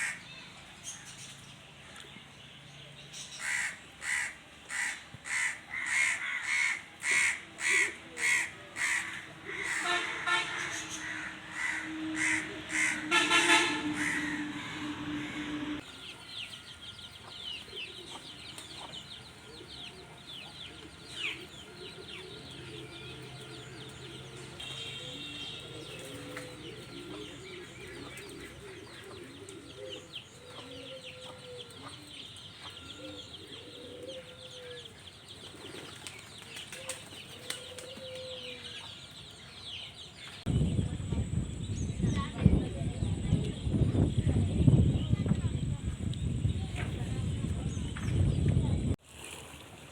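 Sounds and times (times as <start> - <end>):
crows cawing: 3.4 - 15.7
small birds chirping: 15.8 - 49.0
chickens clucking: 17.1 - 24.3, 25.6 - 36.2.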